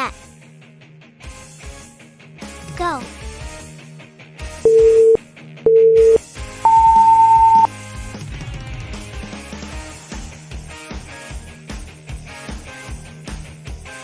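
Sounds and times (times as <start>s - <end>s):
upbeat background music: 2.4s - 14.0s
countdown beeps: 4.7s - 7.7s.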